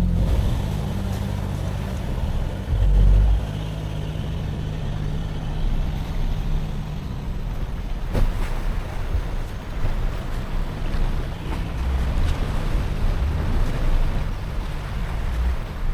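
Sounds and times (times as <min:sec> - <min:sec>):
loud low rumble: 0:00.0 - 0:09.5, 0:10.5 - 0:15.9
engine running at low revs: 0:00.0 - 0:15.9.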